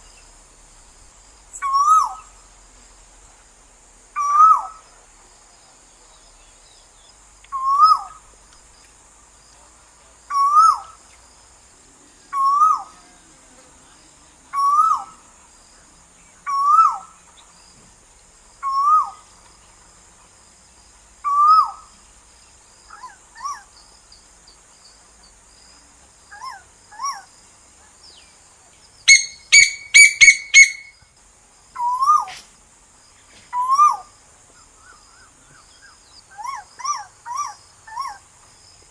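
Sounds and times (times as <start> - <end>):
koel calling: 29.1 - 31.0.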